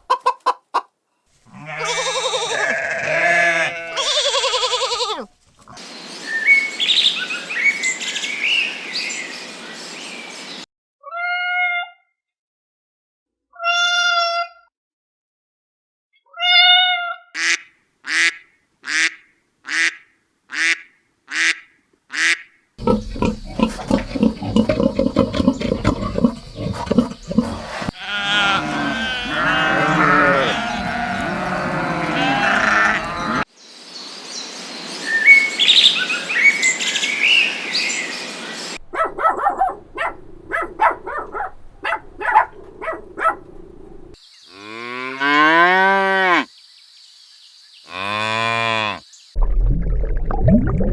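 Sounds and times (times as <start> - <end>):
noisy animal voices: 1.5 - 5.8, 22.8 - 33.5, 47.8 - 49.1
short animal calls: 27.4 - 33.4
low call rising in pitch: 28.0 - 33.5.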